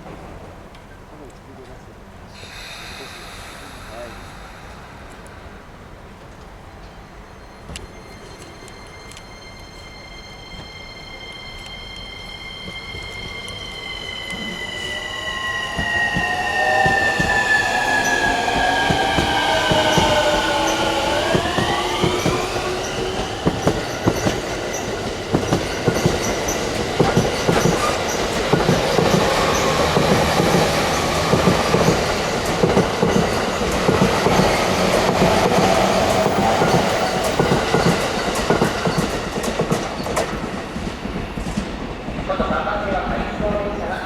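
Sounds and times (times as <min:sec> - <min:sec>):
train rumble: 0:00.0 - 0:44.0
train motor whine: 0:07.4 - 0:40.3.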